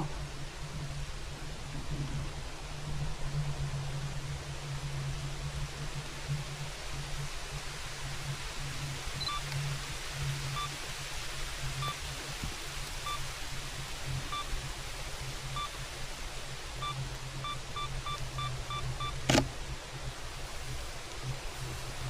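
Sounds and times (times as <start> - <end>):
camera shutter clicking: 19.2 - 19.5.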